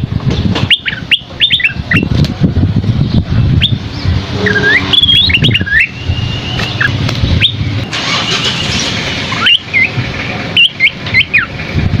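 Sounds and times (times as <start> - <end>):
steady low rumble: 0.0 - 10.5
songbird whistled notes: 0.7 - 2.1, 3.6 - 7.6.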